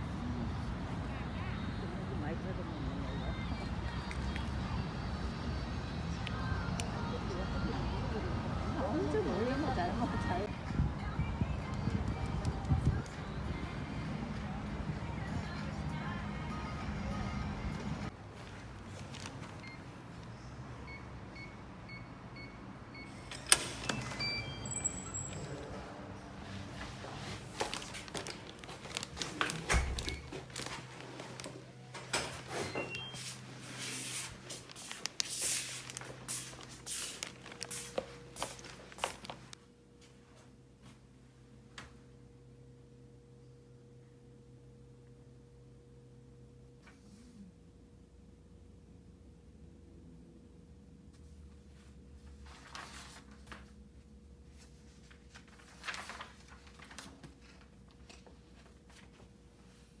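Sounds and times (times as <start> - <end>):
rustling and scraping handling noise: 18.3 - 19.6, 26.4 - 40.2, 54.5 - 60.0.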